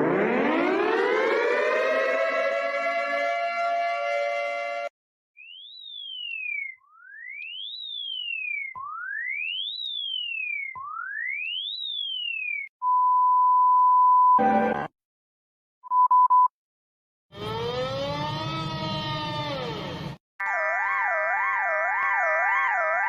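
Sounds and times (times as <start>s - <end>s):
siren-like alert tone: 0.0s - 12.7s, 17.4s - 23.0s.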